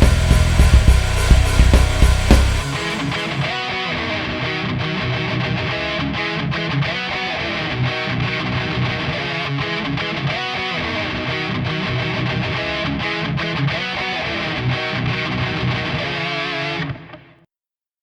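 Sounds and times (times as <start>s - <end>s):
steady bass: 0.0s - 3.5s
distorted electric guitar strumming: 0.0s - 17.3s.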